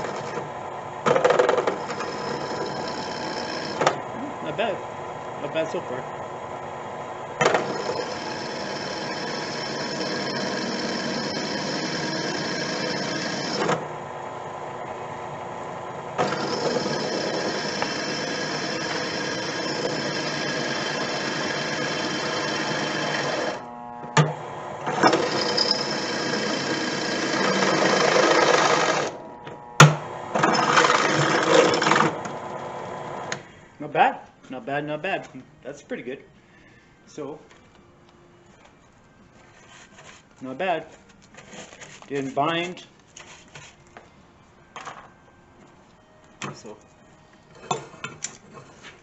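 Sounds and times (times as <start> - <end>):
electric drill cutting metal: 1.7 - 3.8, 7.5 - 13.8, 16.2 - 23.8, 24.8 - 29.2, 29.8 - 32.5.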